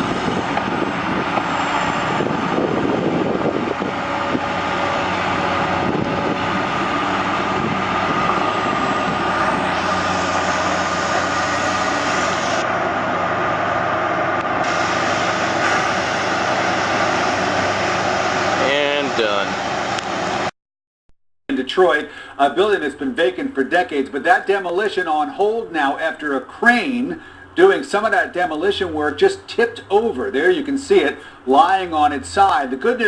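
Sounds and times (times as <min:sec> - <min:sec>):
loud machine engine: 0:00.0 - 0:20.5.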